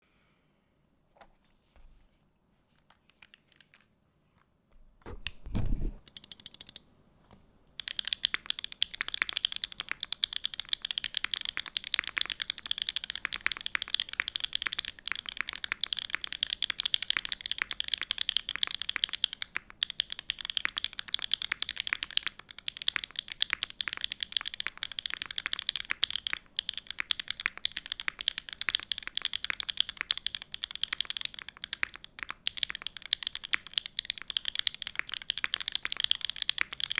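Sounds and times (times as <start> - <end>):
low thump: 5.0 - 6.0
fast typing on mechanical keyboard: 6.0 - 6.8, 7.8 - 36.9
scattered keyboard clicks: 6.0 - 6.8, 7.8 - 36.9.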